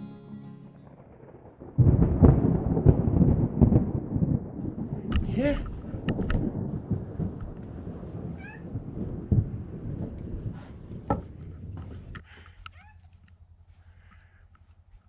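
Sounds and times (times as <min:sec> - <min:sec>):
low rumbling noise: 0:00.8 - 0:12.4
cat meowing: 0:08.4 - 0:08.7, 0:12.7 - 0:13.1.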